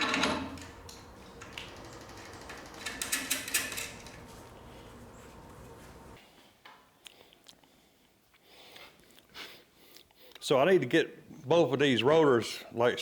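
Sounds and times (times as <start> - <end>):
metal clicking and rattling: 0.0 - 6.2
steady hum: 0.3 - 6.2.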